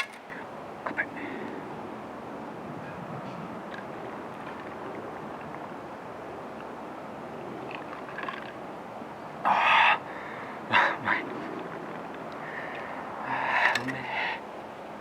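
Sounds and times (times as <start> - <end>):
steady background noise: 0.0 - 15.0.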